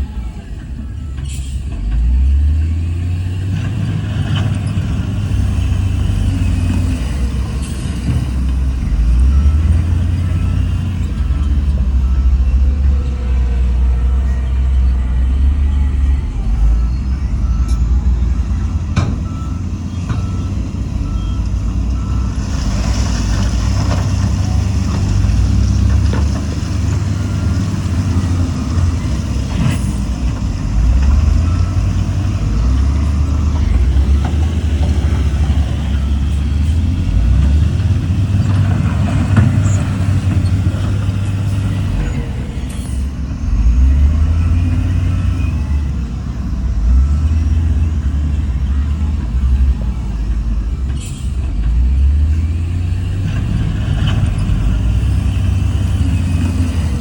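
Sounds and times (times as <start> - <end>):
diesel machinery engine rumble: 0.0 - 57.0
reversing alarm beeping: 0.0 - 57.0.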